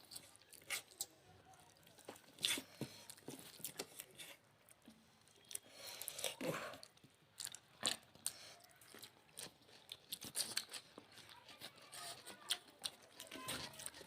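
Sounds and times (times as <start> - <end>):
chewing and crunching: 0.0 - 14.0.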